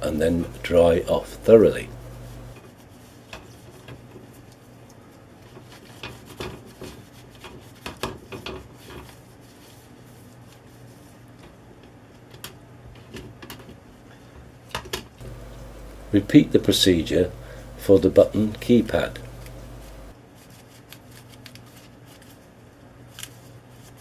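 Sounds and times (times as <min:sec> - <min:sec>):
faint low hum: 0:00.0 - 0:02.6, 0:15.2 - 0:20.2
tissue rubbing on circuit board: 0:01.4 - 0:03.2, 0:15.2 - 0:20.2.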